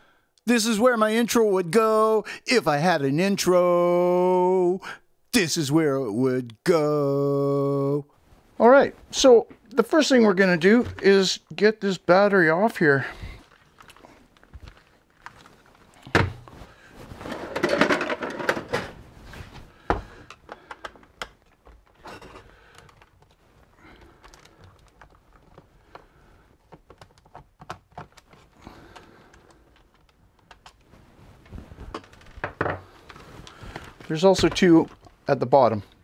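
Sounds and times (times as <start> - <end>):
plastic rattling: 17.3 - 19.0, 24.0 - 35.2
plastic clicks and knocks: 19.9 - 22.0, 26.6 - 28.5.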